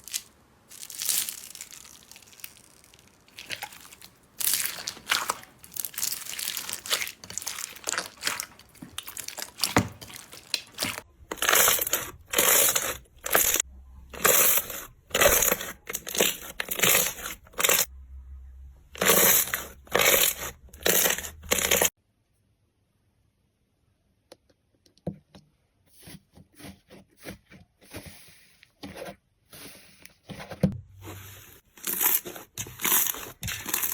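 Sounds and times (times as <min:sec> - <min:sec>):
slime crackling and crunching: 0:00.0 - 0:17.9, 0:19.0 - 0:21.9, 0:31.3 - 0:33.9.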